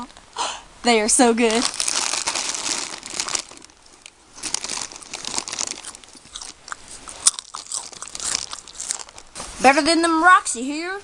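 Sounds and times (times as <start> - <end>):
tortilla chips crunching: 1.5 - 9.4.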